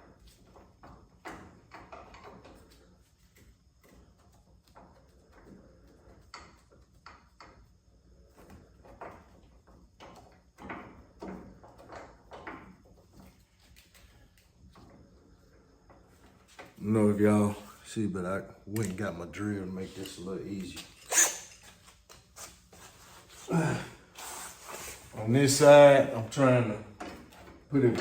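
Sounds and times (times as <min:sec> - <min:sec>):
metal tools clattering: 0:18.7 - 0:21.8.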